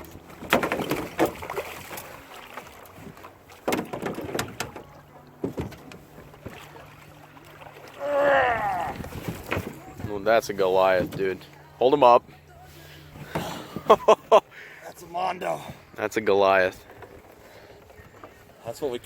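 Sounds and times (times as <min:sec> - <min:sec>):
knocks and thumps on boat: 0:00.0 - 0:11.6, 0:13.1 - 0:14.4
water sloshing: 0:00.0 - 0:19.0.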